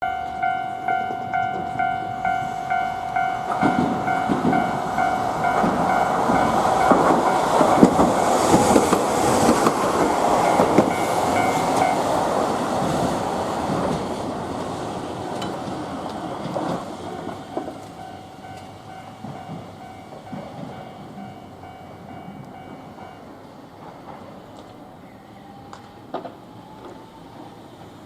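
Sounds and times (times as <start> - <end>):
level crossing bell clanging: 0.0 - 8.7, 10.3 - 12.2, 17.5 - 23.3
tram passing: 0.0 - 28.0
wheels knocking over rail joints: 3.4 - 20.8.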